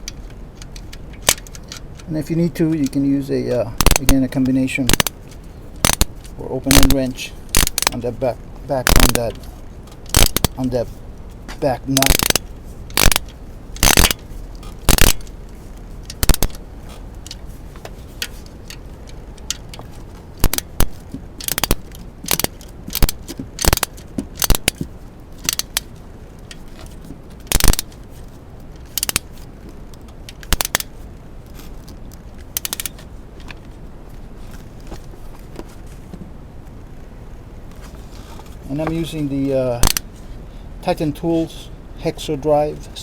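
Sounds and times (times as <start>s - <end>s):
ratchet clicking: 3.6s - 8.0s, 8.8s - 10.7s, 12.0s - 15.4s, 16.0s - 16.6s, 19.4s - 24.8s, 25.4s - 26.0s, 27.5s - 28.0s, 28.8s - 29.4s, 30.3s - 30.9s, 32.5s - 33.0s, 39.8s - 40.1s.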